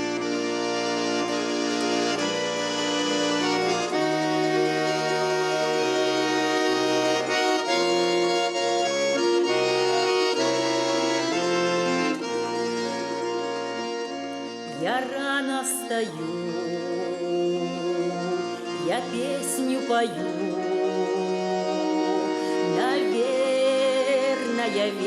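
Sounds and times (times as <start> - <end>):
accordion playing folk tune: 0.0 - 25.0.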